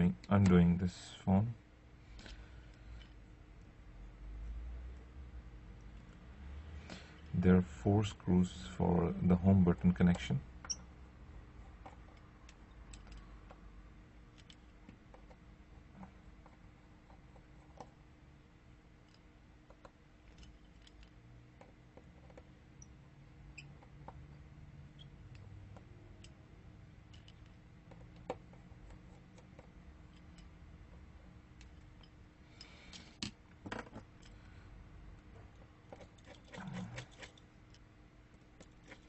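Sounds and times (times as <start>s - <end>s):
faint steady hum: 0.0s - 39.0s
small tools clicking on screws: 11.8s - 13.6s.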